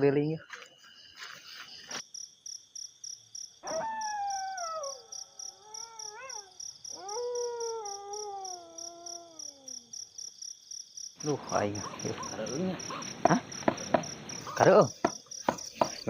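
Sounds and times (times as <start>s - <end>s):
crickets chirping: 0.0s - 16.0s
long falling howls: 3.6s - 9.9s.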